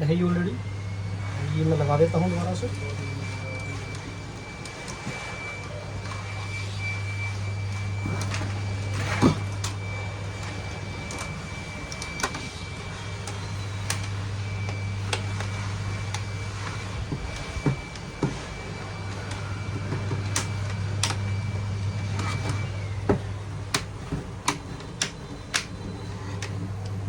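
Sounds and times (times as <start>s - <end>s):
steady low hum: 0.0s - 27.0s
laptop parts clicking and knocking: 19.2s - 21.3s, 22.2s - 27.0s.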